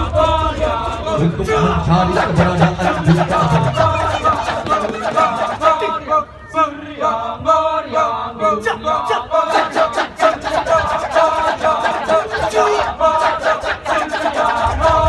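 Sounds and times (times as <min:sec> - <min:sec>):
group of voices chanting: 0:00.0 - 0:15.0
live dance-drama music: 0:00.6 - 0:06.0.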